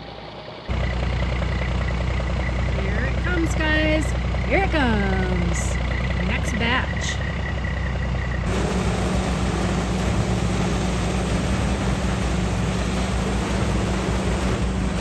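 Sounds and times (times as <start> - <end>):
diesel truck engine running: 0.0 - 15.0
broad rushing noise: 8.5 - 15.0.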